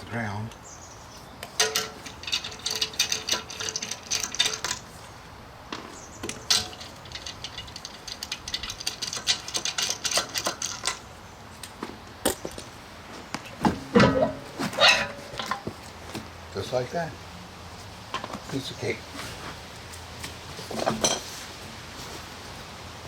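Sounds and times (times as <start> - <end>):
hand tools clicking and rattling: 1.4 - 12.8, 13.7 - 16.2.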